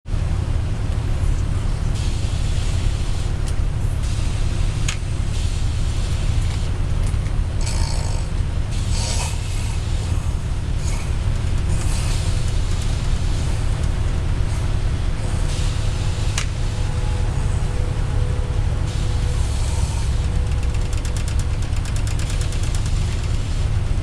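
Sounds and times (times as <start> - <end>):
bus engine drone: 0.0 - 24.0
man snoring: 7.6 - 12.4.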